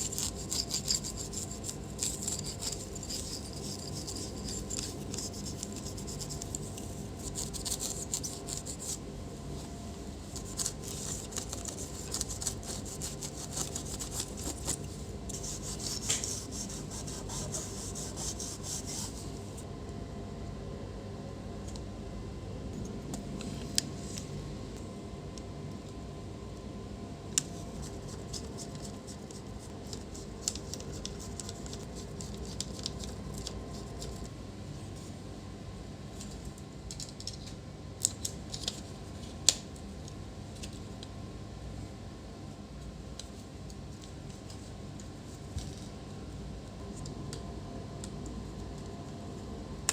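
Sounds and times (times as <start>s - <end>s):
scraping on laptop parts: 0.0s - 9.0s, 10.3s - 19.6s.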